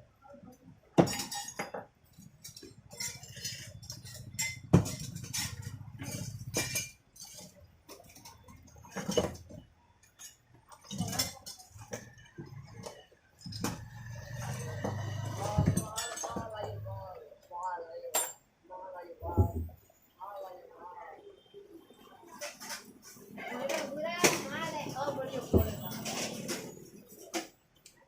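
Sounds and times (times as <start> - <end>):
metal parts and tools clinking: 1.0 - 17.0, 22.3 - 28.0.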